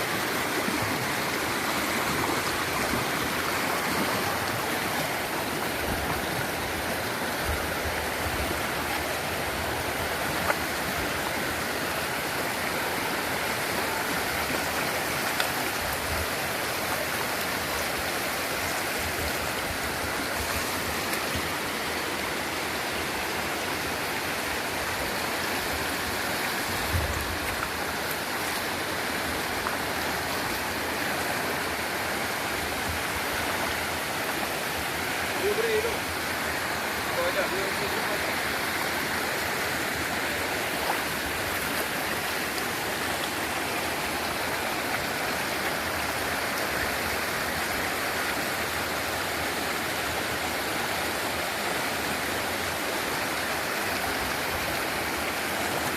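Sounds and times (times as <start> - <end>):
stream water flowing: 0.0 - 55.9.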